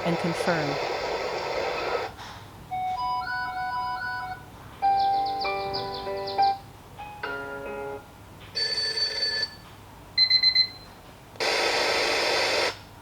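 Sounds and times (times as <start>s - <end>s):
alarm ringing tone: 8.6s - 9.6s.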